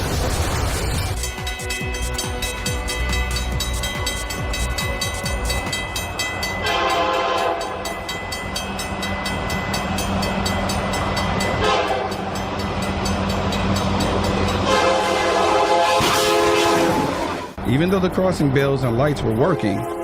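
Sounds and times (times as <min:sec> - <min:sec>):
train rumbling: 0:00.0 - 0:20.0
crossing bell clanging: 0:01.0 - 0:15.6, 0:17.6 - 0:20.0
train horn blasts: 0:06.6 - 0:08.0, 0:11.6 - 0:12.4, 0:14.5 - 0:17.5, 0:19.4 - 0:20.0.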